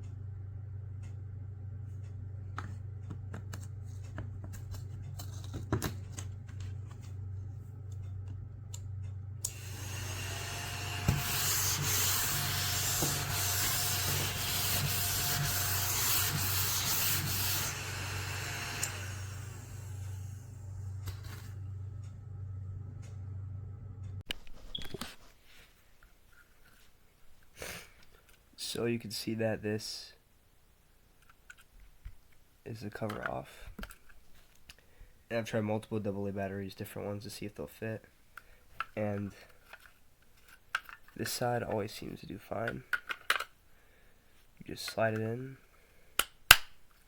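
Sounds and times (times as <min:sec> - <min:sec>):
handling clicks and taps: 0:02.6 - 0:07.1
small vacuum cleaner whine: 0:09.4 - 0:22.1.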